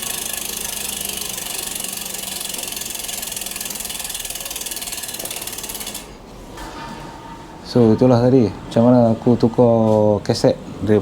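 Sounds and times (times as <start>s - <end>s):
bike freehub ratcheting clicks: 0.0s - 6.1s.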